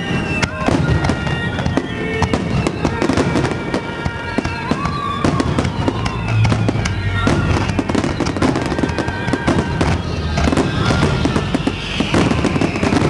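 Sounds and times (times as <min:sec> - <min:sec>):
fireworks bursts and crackling: 0:00.0 - 0:13.0
steady high tones: 0:05.0 - 0:13.0.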